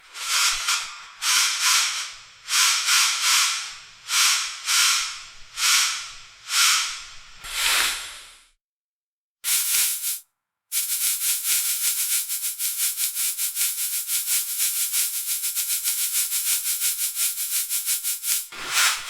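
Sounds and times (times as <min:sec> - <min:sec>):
gauze pad rustling and crinkling: 0:18.5 - 0:19.0.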